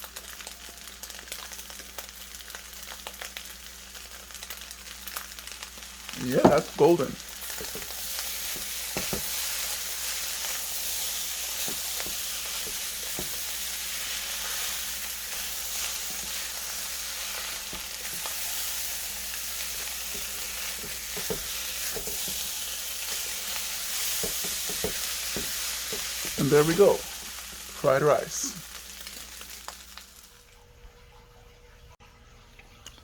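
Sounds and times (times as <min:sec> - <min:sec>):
rice sizzling in a pan: 0:00.0 - 0:30.4
spatula scraping pan: 0:07.4 - 0:26.9.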